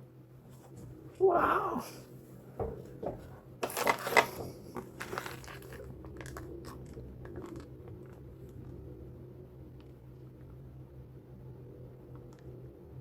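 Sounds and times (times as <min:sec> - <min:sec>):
faint steady hum: 0:00.0 - 0:13.0
packaging crinkling rustle: 0:03.6 - 0:08.2.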